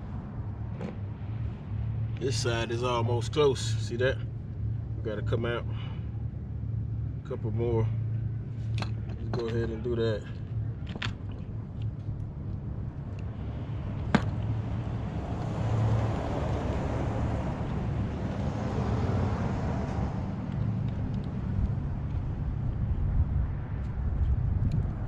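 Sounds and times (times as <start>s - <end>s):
steady low hum: 0.0s - 25.0s
vehicle passing by: 13.4s - 24.2s.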